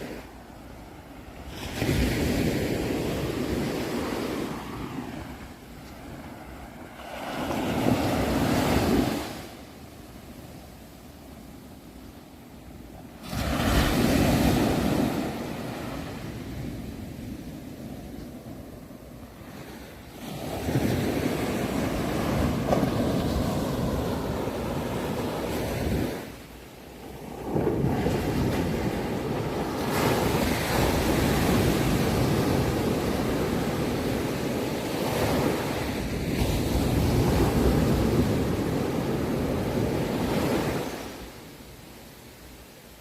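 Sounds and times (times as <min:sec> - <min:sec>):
ocean waves breaking: 0:00.0 - 0:10.4, 0:12.6 - 0:41.4.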